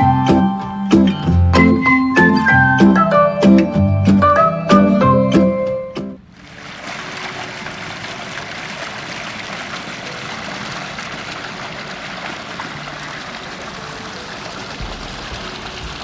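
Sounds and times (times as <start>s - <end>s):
flowing water: 6.2s - 16.0s.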